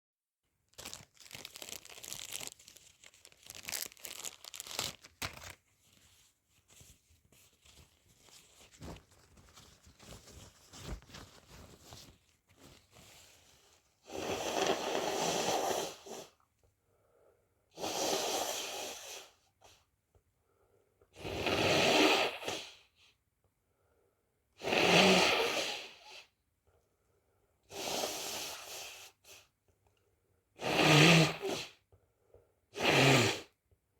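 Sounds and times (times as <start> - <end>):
crinkling handling noise: 0.5 - 13.9.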